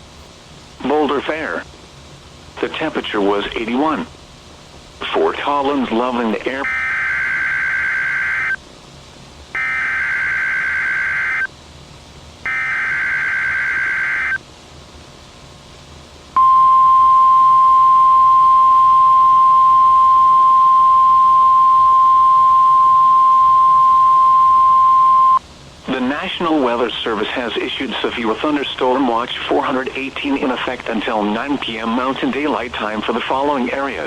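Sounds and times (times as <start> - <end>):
loud steady warning alarm tone: 6.4 - 8.6, 9.5 - 11.5, 12.4 - 14.4, 16.4 - 25.4
buzzy digital data tones: 9.6 - 11.5, 12.5 - 14.4, 16.4 - 25.4.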